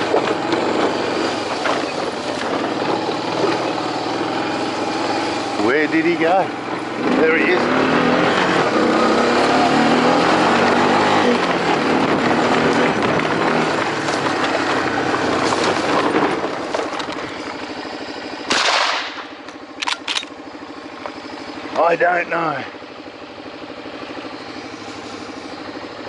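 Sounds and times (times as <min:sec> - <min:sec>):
motor running: 0:00.0 - 0:26.0
rifle shot: 0:18.5 - 0:20.3.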